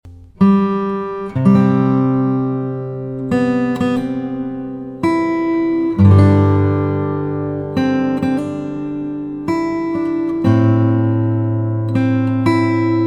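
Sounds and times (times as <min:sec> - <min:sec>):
acoustic guitar strumming chords: 0:00.1 - 0:13.0.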